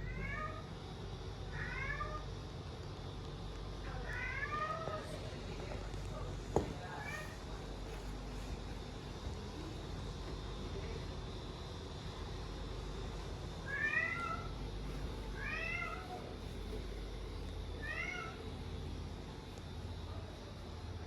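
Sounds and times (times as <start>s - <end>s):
cat meowing: 13.7s - 14.5s, 15.4s - 16.2s, 17.8s - 18.4s.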